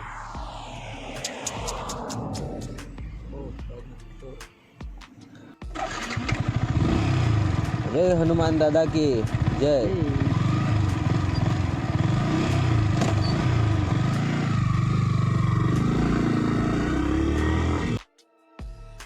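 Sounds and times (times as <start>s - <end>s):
wind rush: 0.0s - 3.3s
motorcycle engine running: 5.7s - 18.0s.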